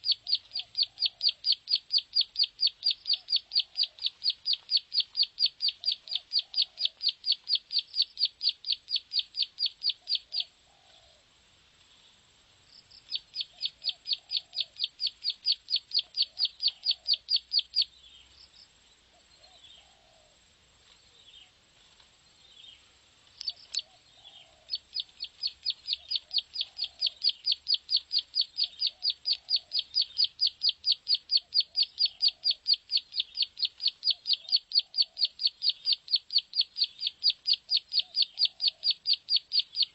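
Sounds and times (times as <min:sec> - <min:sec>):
bird song of rapid high notes: 0:00.0 - 0:10.5, 0:22.4 - 0:39.9
faint lower bird call: 0:00.0 - 0:11.3, 0:12.8 - 0:20.4, 0:22.4 - 0:39.9.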